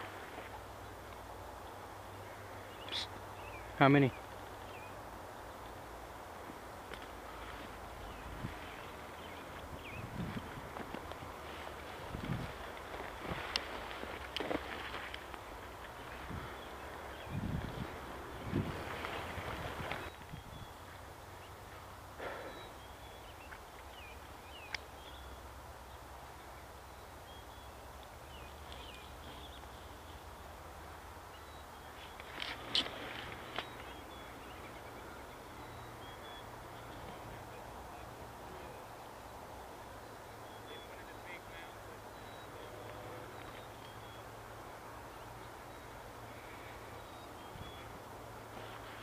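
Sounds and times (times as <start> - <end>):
low wind rumble: 0.0 - 40.5
faint bird chirps: 2.2 - 5.0, 22.2 - 30.5, 31.3 - 44.4, 45.1 - 49.0.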